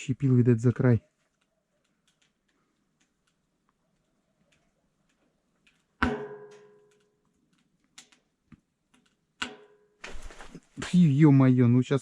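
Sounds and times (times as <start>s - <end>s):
faint clicks: 1.2s - 5.9s
sharp ringing knock: 6.0s - 6.8s.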